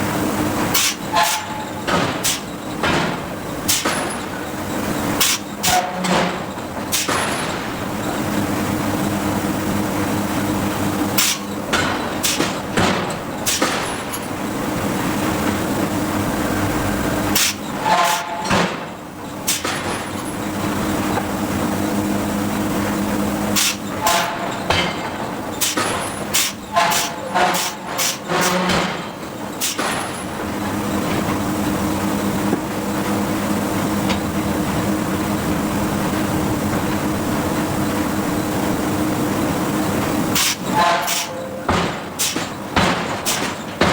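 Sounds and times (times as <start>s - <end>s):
machinery hum: 0.0s - 43.9s
forging hammer blows on steel: 17.3s - 18.9s, 23.6s - 30.0s, 40.3s - 43.9s.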